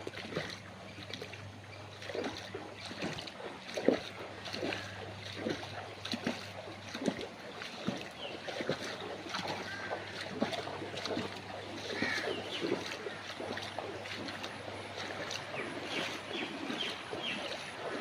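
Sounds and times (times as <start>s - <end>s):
floodwater splashing and sloshing: 0.0s - 18.0s
steady low hum: 0.0s - 18.0s.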